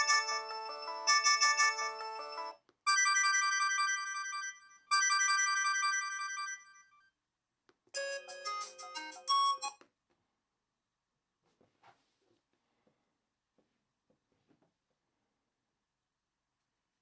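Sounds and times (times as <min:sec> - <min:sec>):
phone synthesized ringtone melodies: 0:00.0 - 0:06.8, 0:08.0 - 0:09.8.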